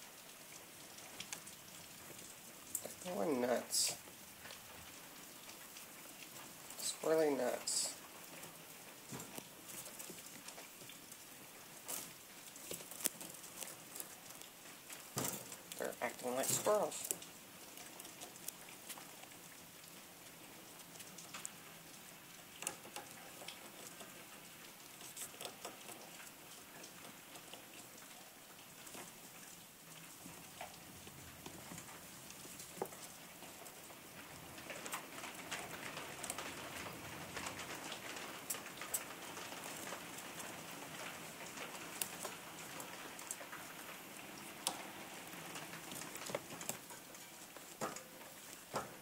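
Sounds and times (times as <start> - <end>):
rustling: 0.8 - 49.0
small claws scratching: 9.2 - 19.5, 20.2 - 29.2, 34.6 - 43.6.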